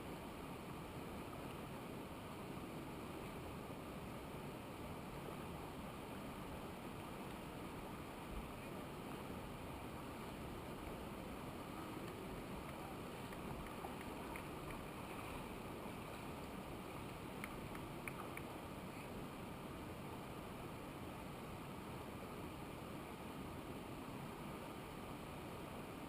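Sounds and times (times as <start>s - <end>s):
steady rushing noise: 0.0s - 26.0s.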